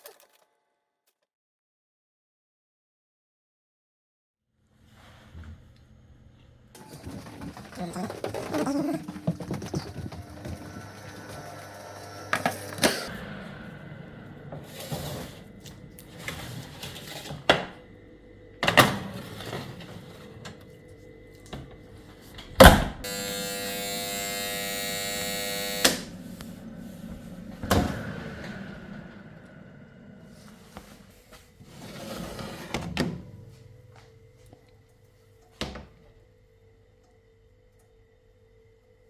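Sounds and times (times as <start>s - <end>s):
steady electric buzz: 22.6s - 26.8s.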